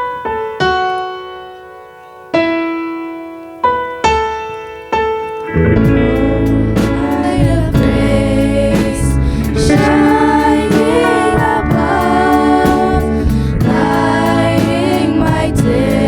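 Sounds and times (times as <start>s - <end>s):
keyboard accompaniment: 0.0s - 16.0s
choir singing: 5.6s - 16.0s.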